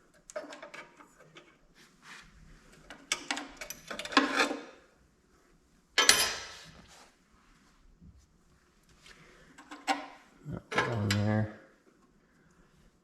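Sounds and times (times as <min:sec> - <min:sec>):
metal tools clinking: 0:06.0 - 0:06.6
sharp metallic clank: 0:06.0 - 0:06.6.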